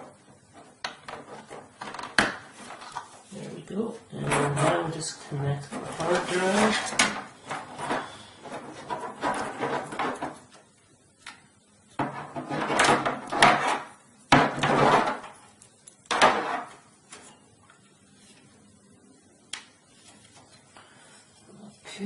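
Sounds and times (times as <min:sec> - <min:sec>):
cables rustling and knocking: 0:00.0 - 0:03.6, 0:04.2 - 0:10.7, 0:12.0 - 0:17.3.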